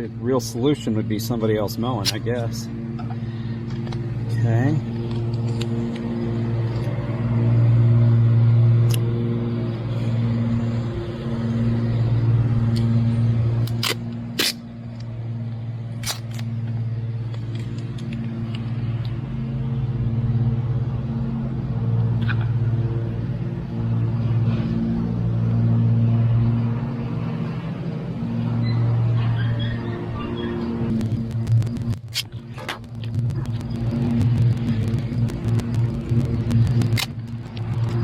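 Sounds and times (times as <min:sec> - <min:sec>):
engine running steadily: 0:00.0 - 0:38.0
sharp clicks: 0:30.9 - 0:38.0.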